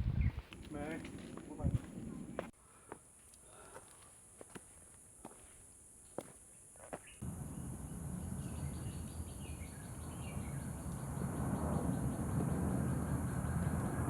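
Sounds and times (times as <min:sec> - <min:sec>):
footsteps: 0:00.3 - 0:03.0
low rumbling noise: 0:07.2 - 0:14.0.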